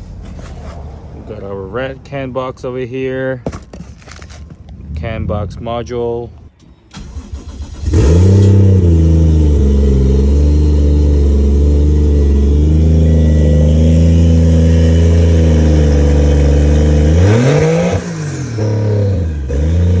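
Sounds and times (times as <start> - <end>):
car engine revving: 7.0 - 20.0.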